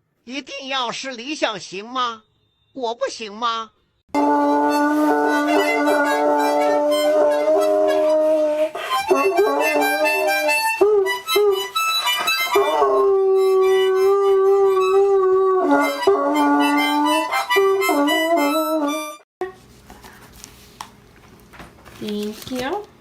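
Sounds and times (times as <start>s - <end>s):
harmonica playing: 4.1s - 19.2s
dog howling: 4.2s - 11.6s, 12.5s - 19.2s.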